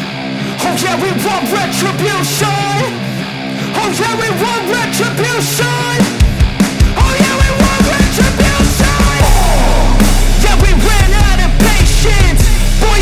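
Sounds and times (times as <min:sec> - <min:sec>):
guitars: 0:00.0 - 0:13.0
loud rock music: 0:00.0 - 0:13.0
driving drum beat: 0:03.8 - 0:13.0
sung or wailing melody: 0:07.0 - 0:13.0.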